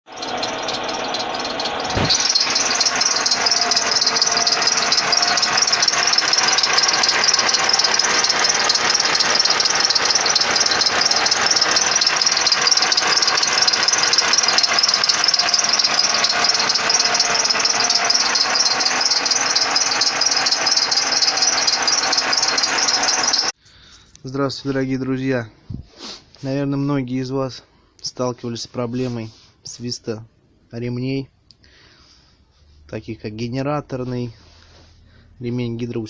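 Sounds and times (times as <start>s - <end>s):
car engine running: 0.0s - 23.6s
drive belt squealing: 0.0s - 23.6s.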